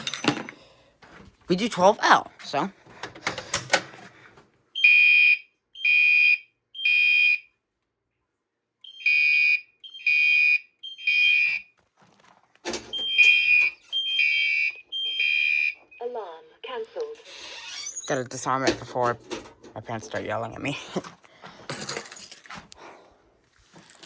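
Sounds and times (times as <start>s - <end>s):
fire alarm horn blasts: 4.8s - 7.5s, 8.8s - 11.6s, 12.9s - 16.1s.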